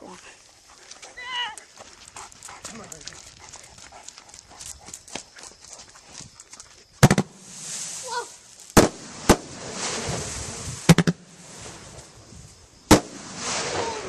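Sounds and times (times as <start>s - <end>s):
fireworks bangs: 7.0s - 12.2s, 12.8s - 14.0s
rising firework hiss: 7.0s - 14.0s.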